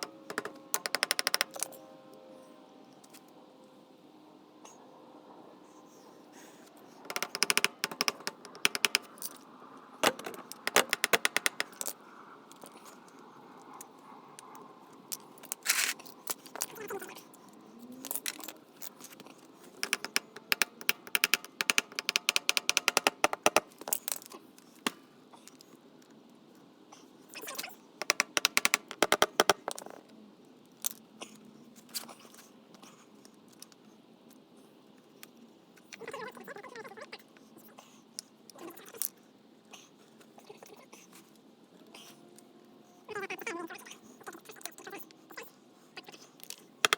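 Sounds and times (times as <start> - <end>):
hand tools clicking on metal: 0.0 - 1.8, 7.1 - 9.4, 10.0 - 12.8, 19.8 - 24.3, 46.4 - 46.9
knocks on metal parts: 10.0 - 11.9, 28.0 - 30.0.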